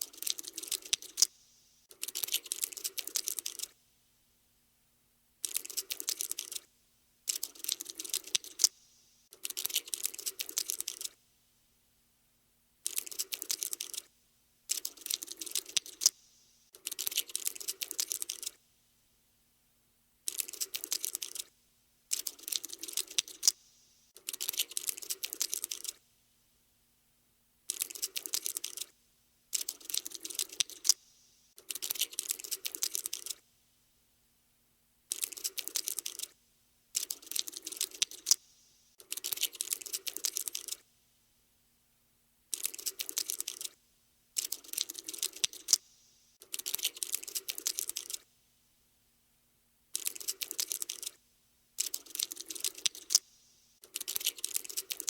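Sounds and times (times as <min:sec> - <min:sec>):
cockroach legs skittering: 0:00.0 - 0:03.7, 0:29.5 - 0:31.0, 0:35.1 - 0:36.3, 0:37.0 - 0:38.4, 0:44.4 - 0:45.8, 0:51.8 - 0:53.2, 0:53.8 - 0:55.0.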